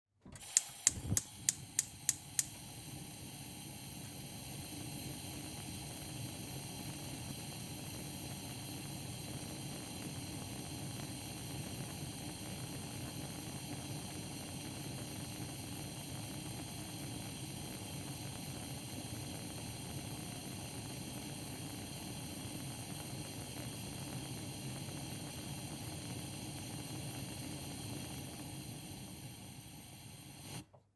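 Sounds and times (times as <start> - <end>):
gas stove igniter clicking: 0.4 - 3.3, 27.4 - 30.6
gas flame hissing: 0.4 - 30.7.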